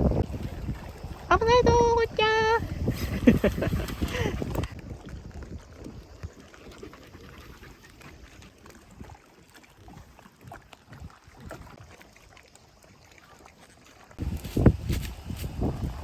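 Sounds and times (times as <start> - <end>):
wind rumble on microphone: 0.0 - 9.2, 14.2 - 16.0.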